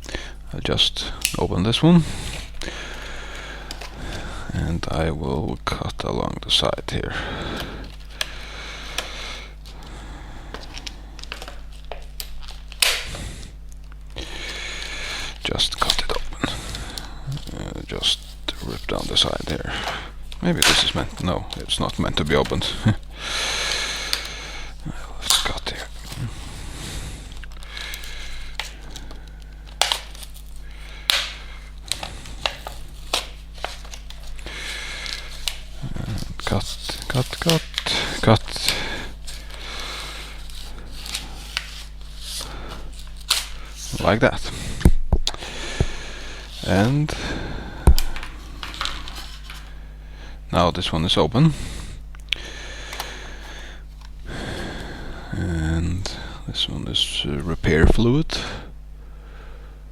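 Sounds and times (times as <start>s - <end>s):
plastic packaging crinkling: 7.8s - 44.2s, 47.9s - 49.8s.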